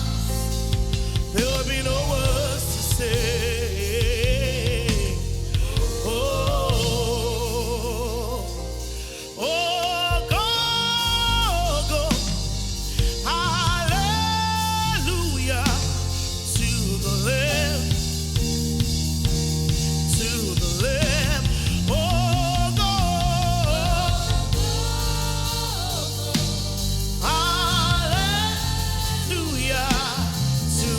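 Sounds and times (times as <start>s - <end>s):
band with bass and drums: 0.0s - 30.9s
person singing with vibrato: 0.0s - 30.9s.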